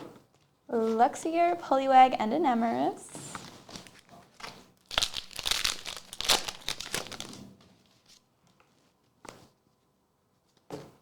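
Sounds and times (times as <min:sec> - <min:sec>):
foil wrapper crinkling and tearing: 0:03.8 - 0:07.4.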